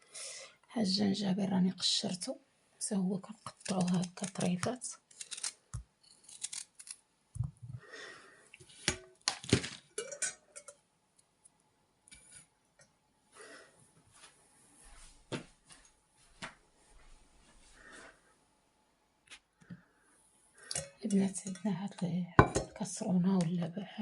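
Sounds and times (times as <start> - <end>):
utensils and dishes clinking: 9.9 - 10.8, 20.6 - 22.8.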